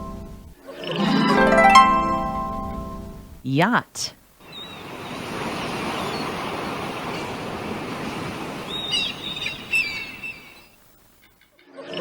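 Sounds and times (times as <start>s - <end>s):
wind: 3.3s - 11.6s
sea rushing: 4.4s - 10.8s
bird chirps: 4.5s - 4.9s, 8.7s - 10.8s.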